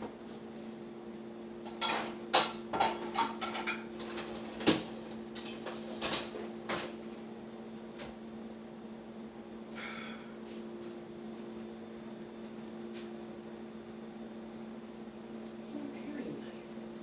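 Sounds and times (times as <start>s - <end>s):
steady low hum: 0.0s - 17.0s
utensils and dishes clattering: 1.7s - 4.4s.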